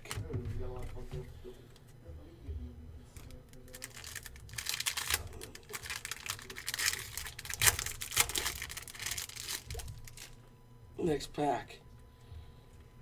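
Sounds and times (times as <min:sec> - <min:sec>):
foil wrapper crinkling: 0:03.2 - 0:10.4.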